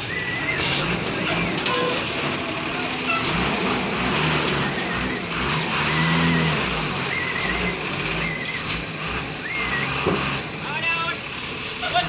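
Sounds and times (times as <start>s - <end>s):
heavy vehicle engine drone: 0.0s - 12.0s
high-pitched squeals: 1.2s - 5.3s.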